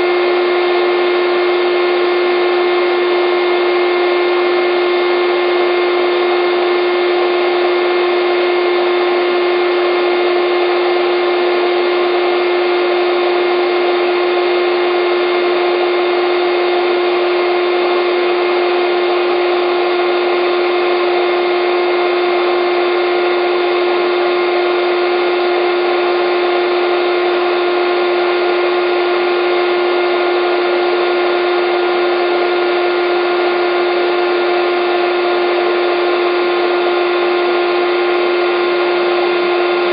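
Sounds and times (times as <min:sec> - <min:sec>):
air pump motor humming: 0:23.9 - 0:39.9.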